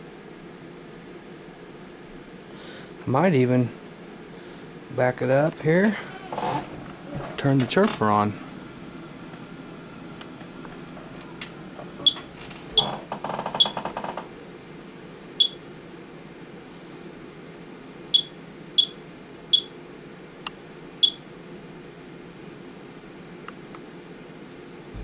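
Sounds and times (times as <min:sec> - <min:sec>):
steady low hum: 0:00.0 - 0:25.0
geiger counter beeps: 0:15.4 - 0:15.6, 0:18.1 - 0:19.7, 0:21.0 - 0:21.2.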